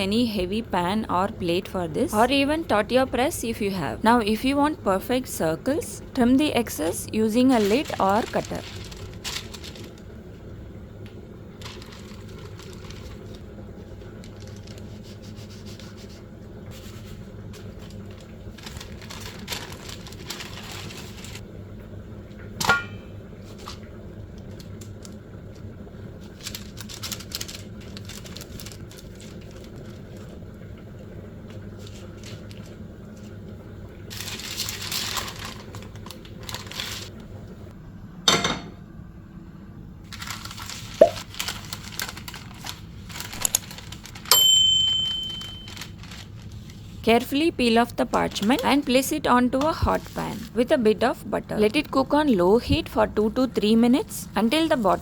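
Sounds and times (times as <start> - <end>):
steady low hum: 0.0 - 55.0
parchment paper rustling: 5.2 - 10.2, 11.6 - 21.4, 24.5 - 30.4, 31.6 - 33.4, 34.1 - 37.1, 40.1 - 51.9.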